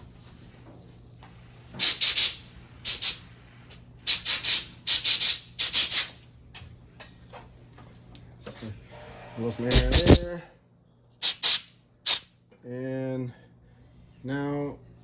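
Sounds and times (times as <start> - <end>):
aerosol spray hissing squirts: 11.2 - 12.2.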